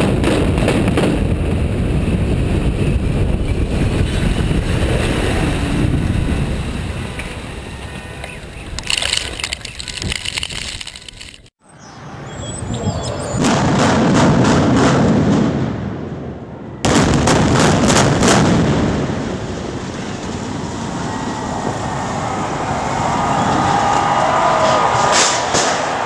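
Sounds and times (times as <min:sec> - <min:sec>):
explosive charge detonations: 0:12.8 - 0:22.4.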